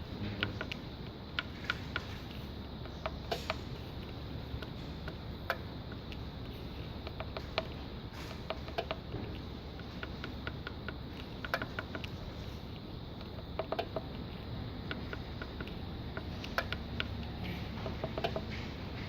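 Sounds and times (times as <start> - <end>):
low background hum: 0.0 - 19.0.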